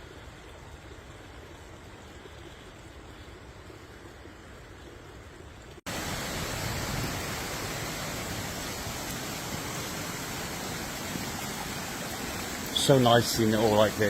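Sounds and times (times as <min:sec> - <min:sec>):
fast-flowing water rushing: 0:05.9 - 0:14.0.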